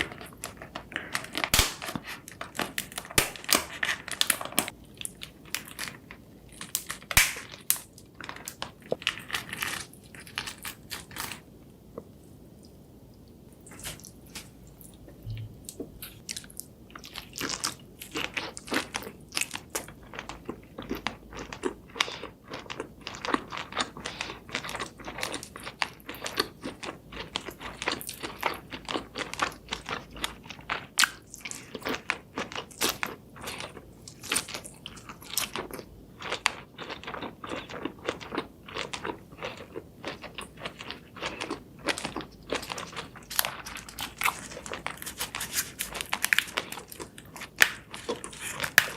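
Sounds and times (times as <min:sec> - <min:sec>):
crisp crackly crunches: 0:00.0 - 0:11.5, 0:15.7 - 0:48.9
seafood being chewed: 0:00.0 - 0:48.9.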